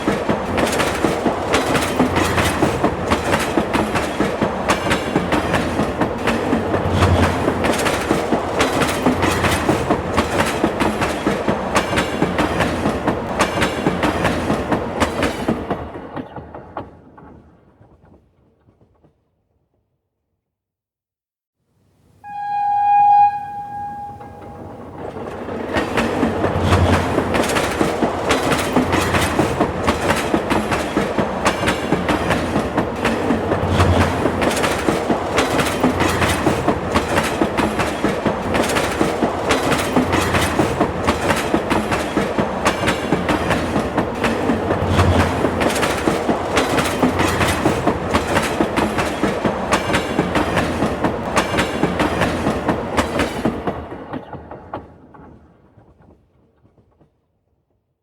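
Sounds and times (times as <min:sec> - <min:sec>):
train rumbling past: 0:00.0 - 0:18.1, 0:22.2 - 0:56.8
wheels clacking over rail joints: 0:00.0 - 0:18.2, 0:24.3 - 0:57.2
train horn blast: 0:22.2 - 0:25.0.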